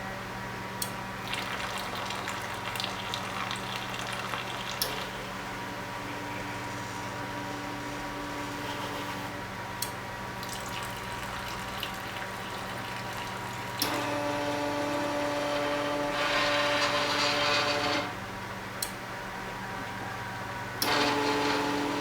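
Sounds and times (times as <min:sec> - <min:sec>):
machine motors running: 0:04.4 - 0:09.4, 0:12.8 - 0:18.2, 0:19.7 - 0:22.0.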